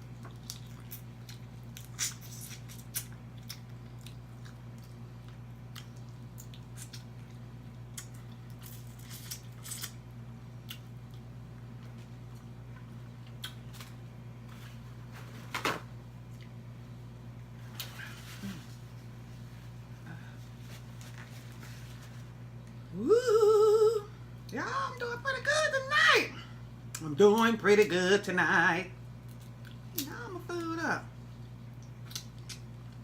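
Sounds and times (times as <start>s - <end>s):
steady low hum: 0.0s - 33.0s
wet chewing and mouth smacks: 0.2s - 10.0s, 10.6s - 14.0s, 29.2s - 30.1s, 31.4s - 33.0s.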